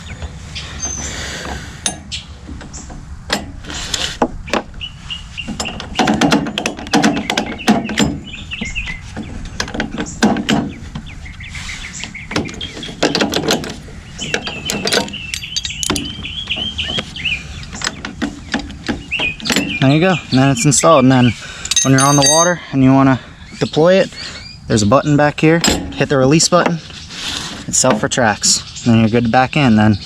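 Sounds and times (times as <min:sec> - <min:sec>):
birds chirping: 0:00.0 - 0:30.0
metal clinks: 0:14.7 - 0:16.1, 0:21.6 - 0:22.7.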